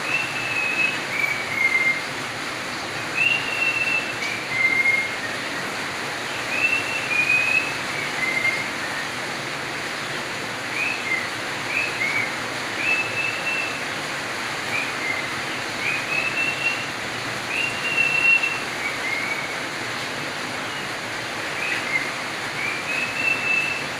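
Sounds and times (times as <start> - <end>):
budgerigar whistled calls: 0.0 - 2.1, 3.2 - 5.7, 6.3 - 9.1, 10.7 - 13.8, 14.7 - 19.6, 21.5 - 23.9
steady hiss: 0.0 - 23.9.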